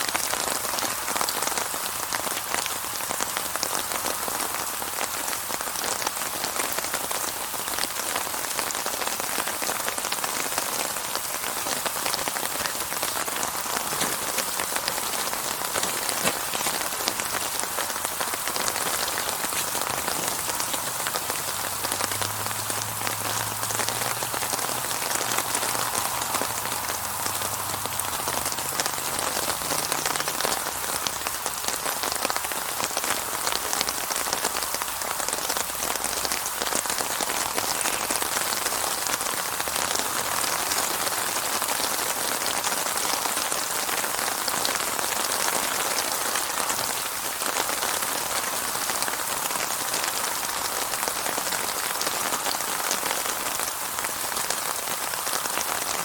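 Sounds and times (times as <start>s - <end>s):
steady rainfall: 0.0s - 56.0s.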